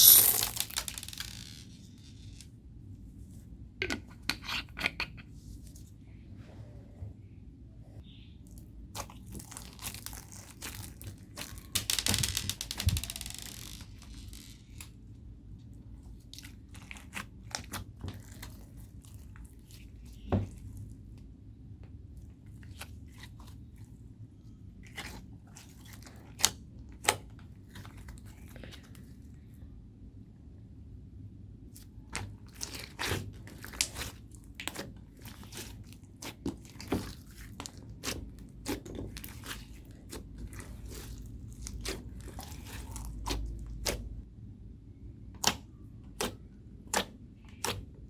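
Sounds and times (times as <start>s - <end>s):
slime squished by hand crackling: 32.1s - 44.2s.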